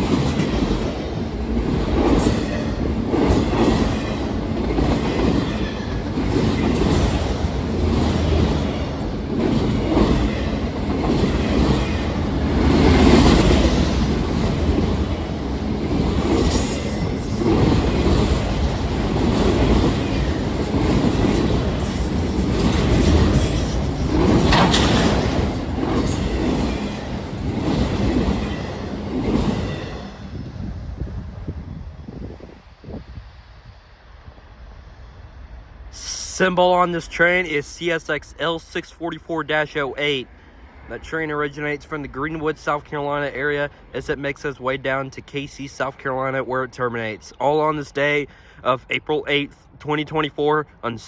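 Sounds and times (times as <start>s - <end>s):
train wheels clacking over rail joints: 0.0s - 30.0s
wheel squeal: 21.2s - 27.2s.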